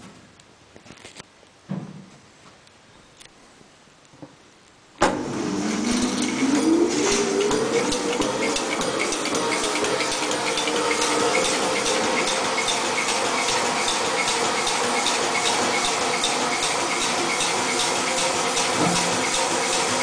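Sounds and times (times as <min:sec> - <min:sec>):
compressor air rushing: 0:05.0 - 0:20.0
power hammer beating: 0:05.8 - 0:20.0.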